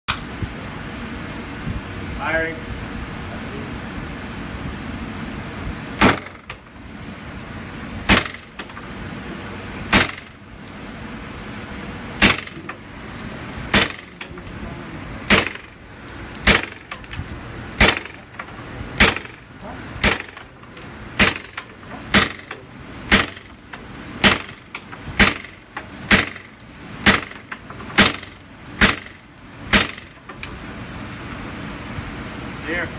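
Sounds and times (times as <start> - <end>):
suppressed pistol shots: 6.0 - 6.4, 9.9 - 10.4, 12.2 - 12.6, 13.7 - 14.1, 15.3 - 15.7, 16.4 - 16.9, 17.8 - 18.2, 19.0 - 19.4, 20.0 - 20.4, 21.2 - 22.5, 23.1 - 23.5, 24.2 - 24.6, 25.2 - 27.4.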